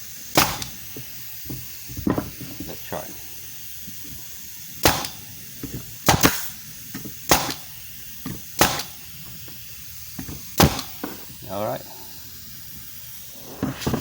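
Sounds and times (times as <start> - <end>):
pneumatic nailer firing: 0.0 - 2.8, 3.4 - 11.4.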